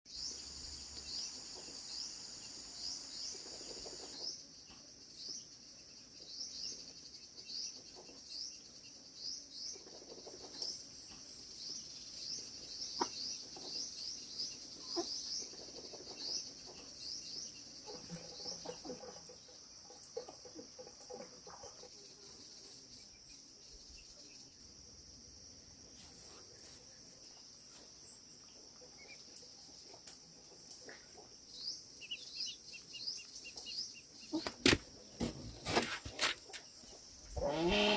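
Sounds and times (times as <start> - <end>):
bird chirping: 0.1 - 24.8, 26.3 - 37.9
chickens clucking: 13.0 - 13.8, 14.8 - 16.9, 17.8 - 21.9.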